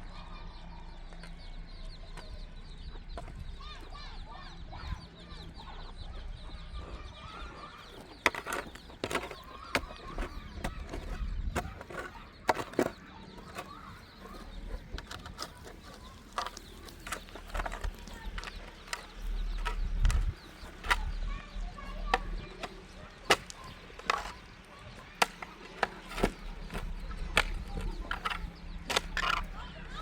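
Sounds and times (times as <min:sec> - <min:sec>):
chickens clucking: 0:00.0 - 0:30.0
sharp knocks and taps: 0:07.9 - 0:29.5.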